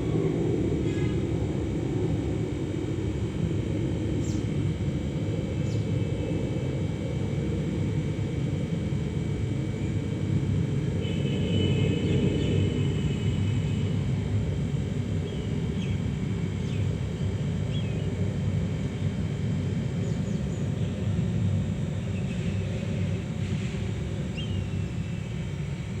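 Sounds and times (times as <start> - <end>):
low outdoor rumble: 0.0 - 17.6.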